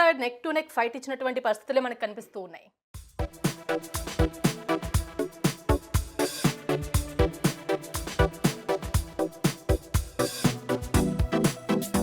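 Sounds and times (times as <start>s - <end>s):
electronic music with fast beat: 3.0s - 12.0s.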